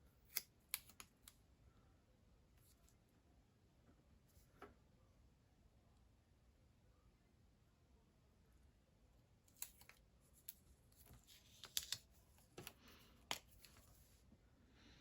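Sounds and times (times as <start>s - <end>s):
paper rustling and clicks: 9.5s - 14.0s.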